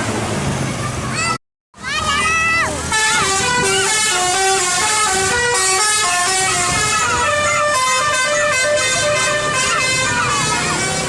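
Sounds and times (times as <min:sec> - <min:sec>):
multi-tone bus horn tune: 0:02.8 - 0:11.0.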